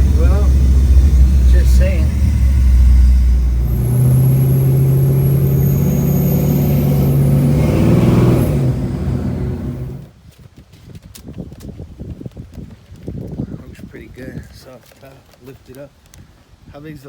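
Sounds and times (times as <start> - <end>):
engine running with loud drone: 0.0 - 10.1.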